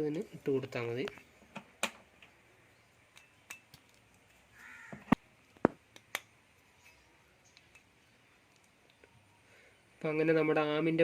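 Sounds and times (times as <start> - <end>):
metallic clicks of small parts: 3.1 - 4.4, 5.4 - 9.1.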